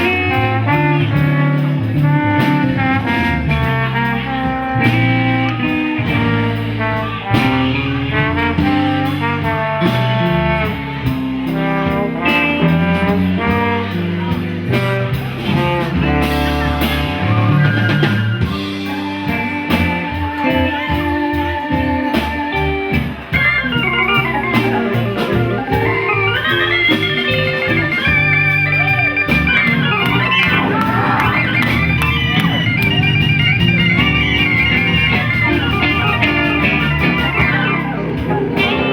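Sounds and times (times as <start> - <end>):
live band playing blues-jazz: 0.0 - 38.9
wavering lead line: 13.2 - 38.9.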